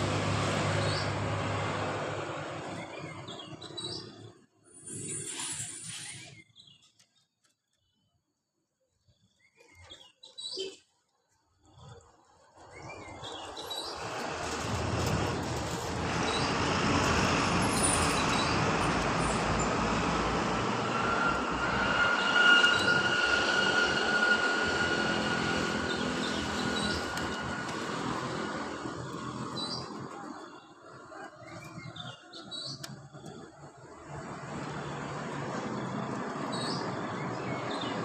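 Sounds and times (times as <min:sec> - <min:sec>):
vehicle passing: 0:00.0 - 0:03.6, 0:14.0 - 0:30.4, 0:33.3 - 0:38.0
high-pitched squeal: 0:04.7 - 0:06.5, 0:13.6 - 0:30.4.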